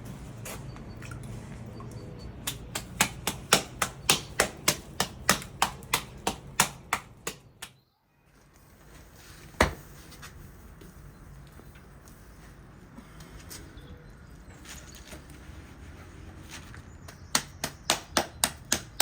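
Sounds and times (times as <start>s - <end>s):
sharp knocks: 2.5s - 7.7s.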